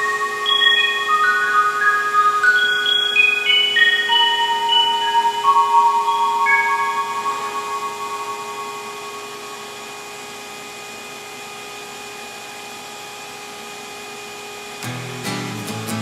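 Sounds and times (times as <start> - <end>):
vacuum cleaner running: 8.4 - 16.0
guitar music: 14.8 - 16.0.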